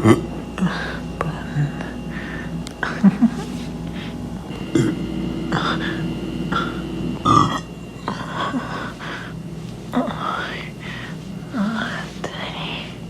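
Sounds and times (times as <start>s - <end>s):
person burping: 4.7s - 5.8s, 6.6s - 8.2s.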